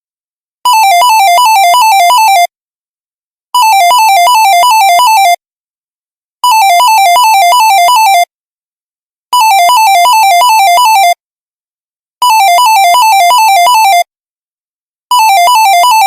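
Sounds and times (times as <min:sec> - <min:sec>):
warbling phone ringtone: 0:00.7 - 0:02.5, 0:03.6 - 0:05.4, 0:06.4 - 0:08.3, 0:09.4 - 0:11.2, 0:12.2 - 0:14.1, 0:15.1 - 0:16.0.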